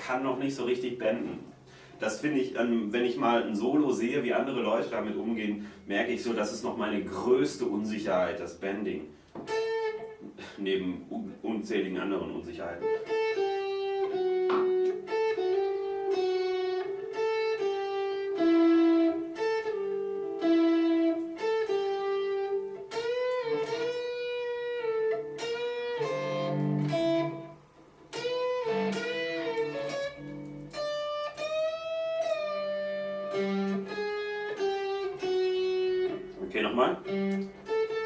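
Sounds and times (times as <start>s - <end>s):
electric guitar lead line: 9.3s - 10.5s, 12.3s - 38.0s.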